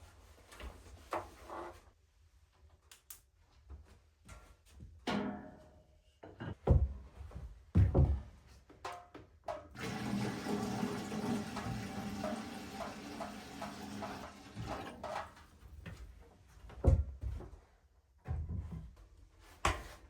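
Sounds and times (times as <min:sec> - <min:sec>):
liquid pouring: 0:09.8 - 0:14.8.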